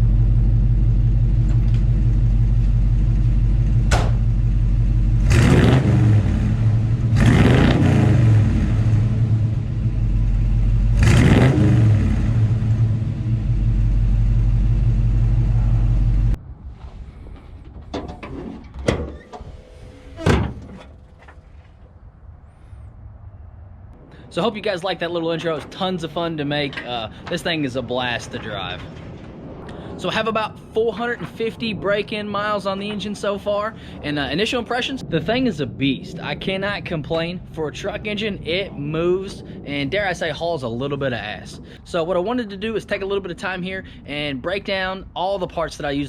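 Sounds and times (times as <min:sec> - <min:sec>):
engine revving: 0:00.0 - 0:16.4.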